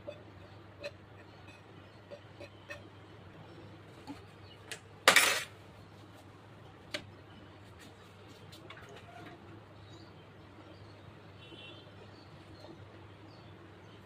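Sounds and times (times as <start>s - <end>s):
dishes clattering: 5.1s - 5.5s
kitchen utensils clinking: 5.1s - 5.5s.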